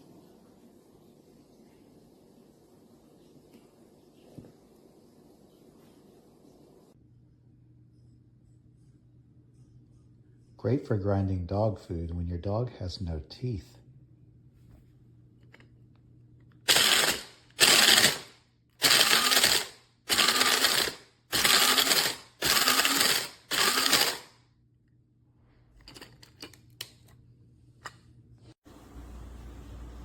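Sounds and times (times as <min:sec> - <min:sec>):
electric blade grinder bursts: 0:16.7 - 0:24.4.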